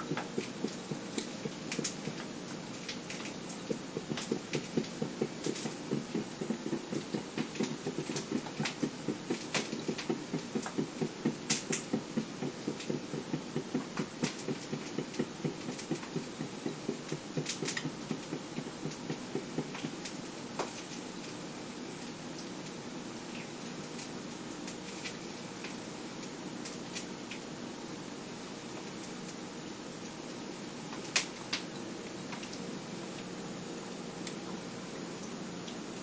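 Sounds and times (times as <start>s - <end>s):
frying pan crackling pops: 0.0s - 21.4s, 31.0s - 31.7s.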